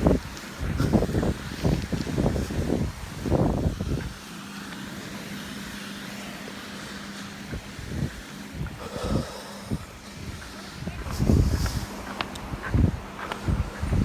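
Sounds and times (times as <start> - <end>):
wind thumps on microphone: 0.0 - 4.2, 7.5 - 14.0
engine humming: 0.0 - 14.0.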